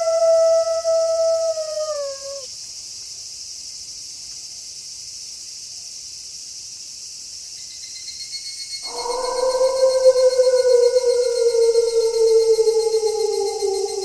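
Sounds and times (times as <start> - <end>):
wolf howling: 0.0 - 2.4, 8.8 - 14.0
crickets chirping: 0.0 - 14.0.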